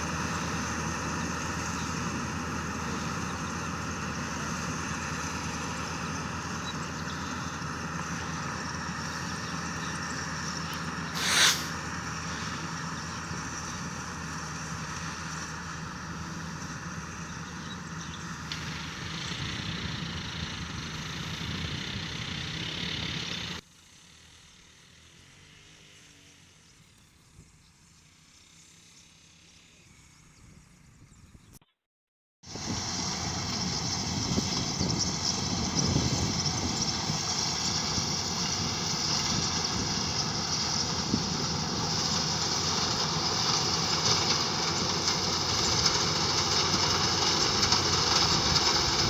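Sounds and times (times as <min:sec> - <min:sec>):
combine harvester engine running: 0:00.0 - 0:23.6, 0:32.5 - 0:49.0
short loud burst: 0:11.2 - 0:11.8.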